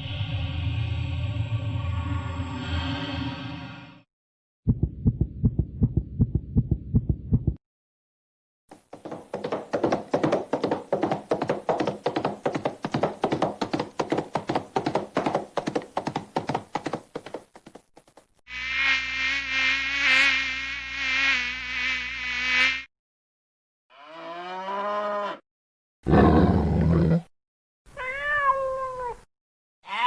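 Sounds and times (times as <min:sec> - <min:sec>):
low hum: 0:00.0 - 0:04.0
rapid buzzing pulse: 0:18.5 - 0:22.9.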